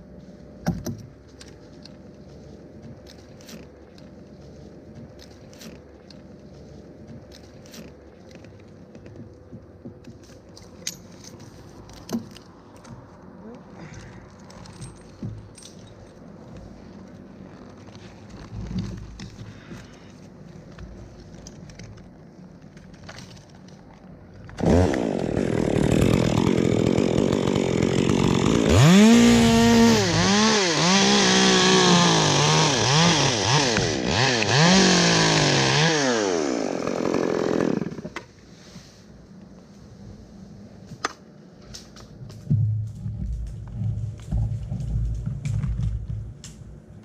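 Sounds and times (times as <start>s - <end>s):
chainsaw cutting wood: 24.5s - 38.3s.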